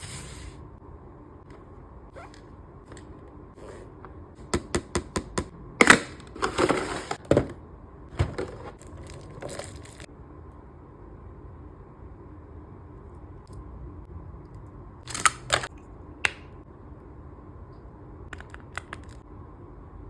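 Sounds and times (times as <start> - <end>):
packaging crinkling and rustling: 8.3 - 10.1.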